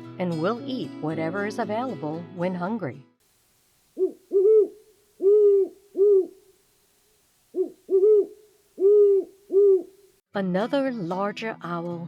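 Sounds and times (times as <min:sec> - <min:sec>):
owl hooting: 0:03.9 - 0:10.2.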